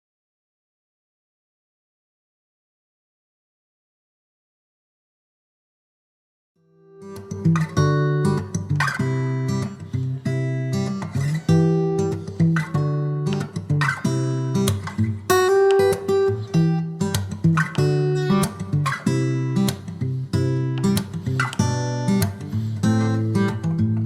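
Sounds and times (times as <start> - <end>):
strummed acoustic guitar chords: 6.9 - 24.0.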